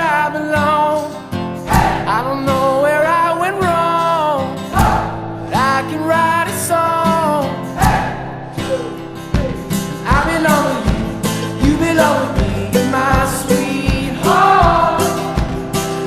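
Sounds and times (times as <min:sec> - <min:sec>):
guitar: 0:00.0 - 0:16.0
person singing pop song: 0:00.0 - 0:16.0
steady beat: 0:01.7 - 0:02.1, 0:07.8 - 0:16.0.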